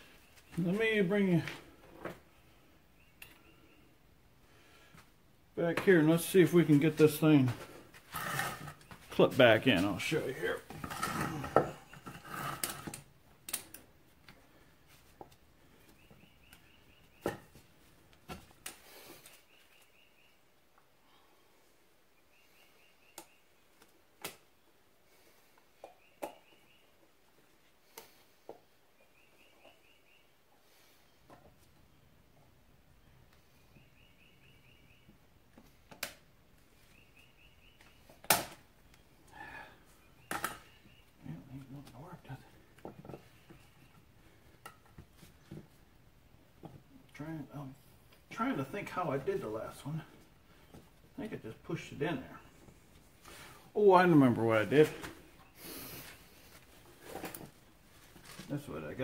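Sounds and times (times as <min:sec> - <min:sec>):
faint bird chirps: 0:02.2 - 0:04.0, 0:15.6 - 0:17.6, 0:18.8 - 0:21.5, 0:22.1 - 0:23.8, 0:24.6 - 0:27.1, 0:28.0 - 0:32.2, 0:32.9 - 0:35.2, 0:36.7 - 0:38.2, 0:38.8 - 0:44.6.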